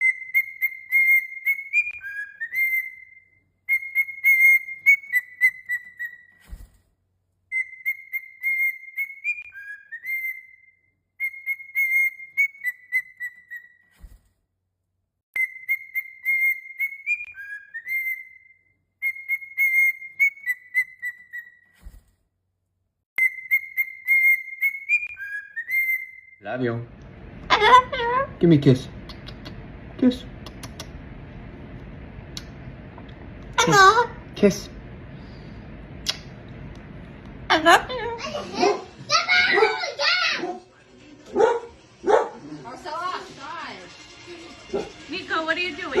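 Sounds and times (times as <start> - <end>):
parrot whistling a tune: 0.0 - 6.4, 7.5 - 13.8, 15.4 - 21.6, 23.2 - 26.4.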